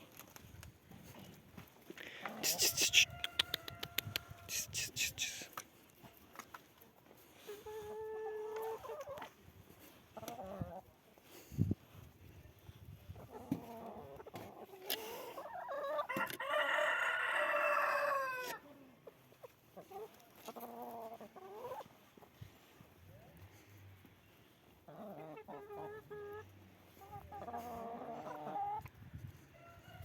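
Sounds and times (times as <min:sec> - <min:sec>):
chicken calls: 0:02.1 - 0:05.6, 0:13.2 - 0:22.3, 0:24.8 - 0:28.9
rooster crowing: 0:16.1 - 0:18.6.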